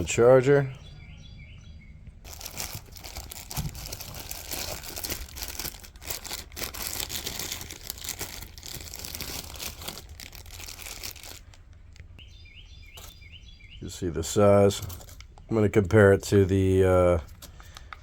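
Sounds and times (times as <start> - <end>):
packaging crinkling and rustling: 2.2 - 12.2, 14.7 - 15.5.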